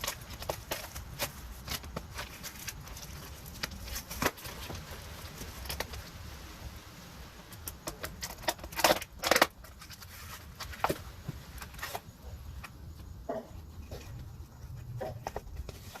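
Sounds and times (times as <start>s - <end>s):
packaging crinkling and rustling: 0.0s - 6.3s, 7.5s - 12.8s.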